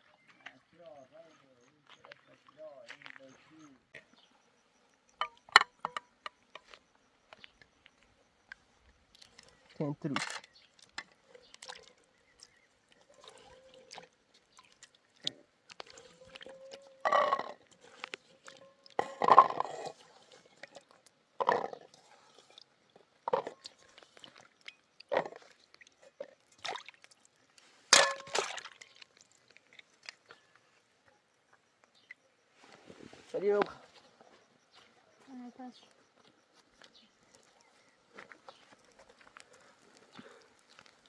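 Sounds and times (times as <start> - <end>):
faint steady tone: 0.0 - 41.0
knocks and clinks: 5.2 - 6.6, 28.0 - 28.5.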